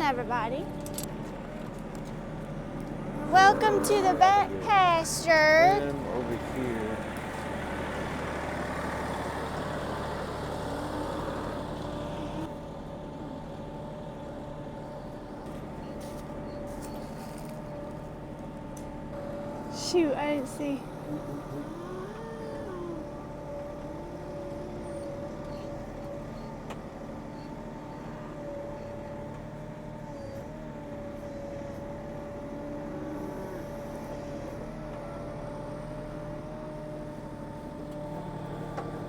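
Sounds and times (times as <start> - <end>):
vehicle engine whining: 0.0 - 39.0
cattle mooing: 3.0 - 7.6, 20.8 - 25.2.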